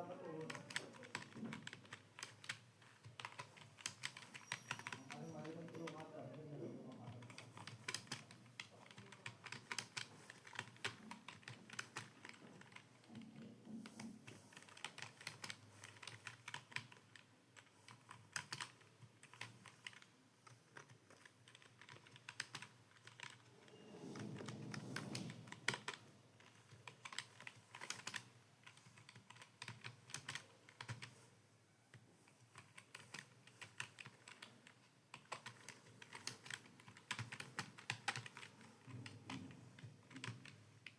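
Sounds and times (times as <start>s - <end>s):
typing on computer keyboard: 0.3s - 23.5s, 24.2s - 31.2s, 31.9s - 40.9s.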